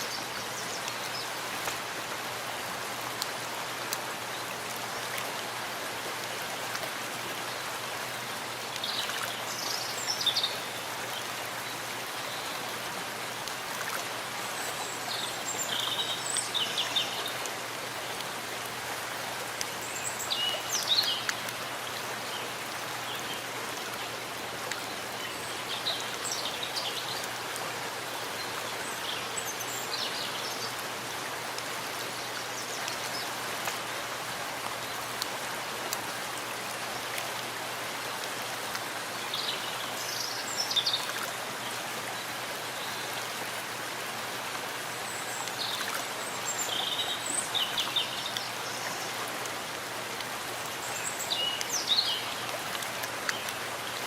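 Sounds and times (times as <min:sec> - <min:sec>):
rain falling in forest: 0:00.0 - 0:54.0.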